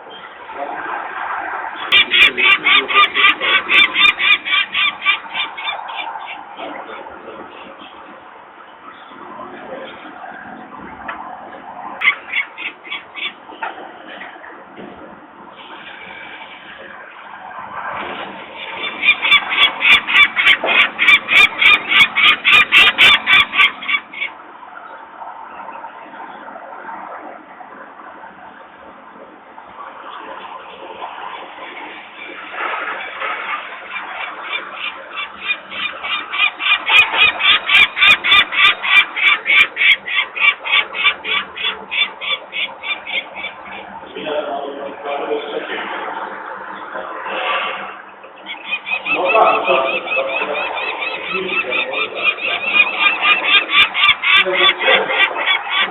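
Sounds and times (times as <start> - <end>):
falcon harsh alarm call: 1.7 - 6.5, 12.0 - 13.4, 18.6 - 24.4, 33.0 - 43.9, 48.4 - 55.9.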